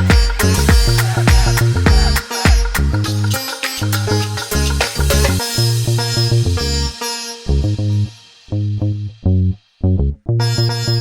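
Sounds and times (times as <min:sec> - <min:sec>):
upbeat dance music: 0:00.0 - 0:05.8.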